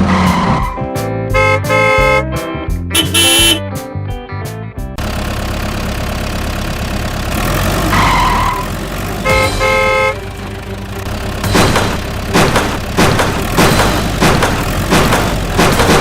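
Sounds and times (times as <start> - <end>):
horn honks: 1.3 - 2.3, 2.9 - 3.7, 7.9 - 11.0
vehicle engine running: 2.9 - 3.7, 4.8 - 16.0.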